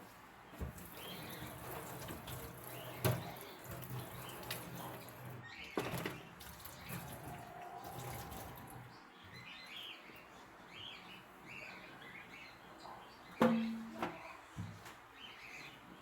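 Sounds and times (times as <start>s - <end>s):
small birds chirping: 0.4s - 16.0s
single knock: 13.4s - 14.2s.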